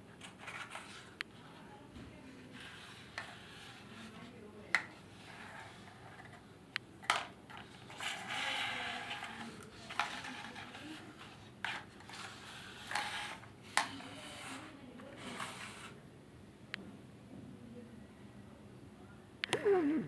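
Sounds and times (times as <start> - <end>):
scratchy noise: 2.3 - 4.3, 7.6 - 16.0.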